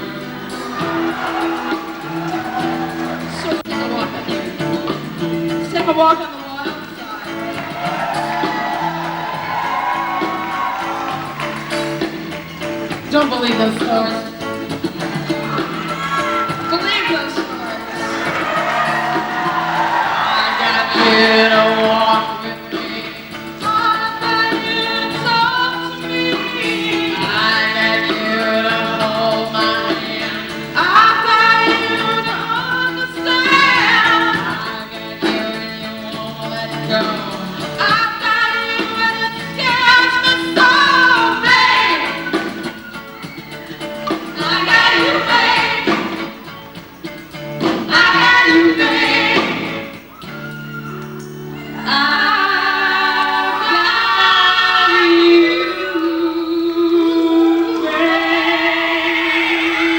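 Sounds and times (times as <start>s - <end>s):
pop band with women singing: 0.0s - 59.9s.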